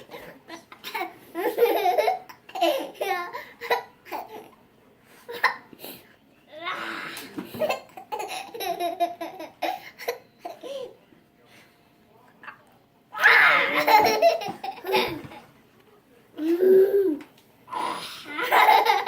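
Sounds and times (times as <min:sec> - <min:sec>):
small child giggling: 0:18.4 - 0:19.0.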